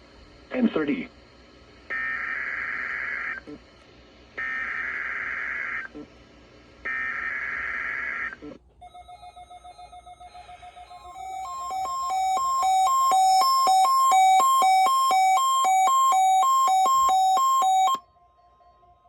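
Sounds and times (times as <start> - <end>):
alternating two-tone beeping: 11.0 - 18.0.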